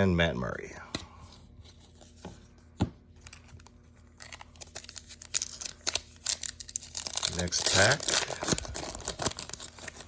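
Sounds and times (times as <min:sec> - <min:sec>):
foil wrapper crinkling and tearing: 0:03.3 - 0:10.0.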